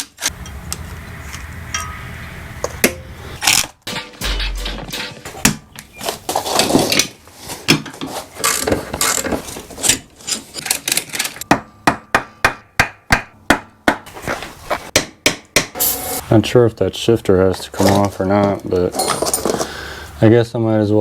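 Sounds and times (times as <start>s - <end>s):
tools scraping and knocking: 4.8s - 12.4s, 17.8s - 19.7s.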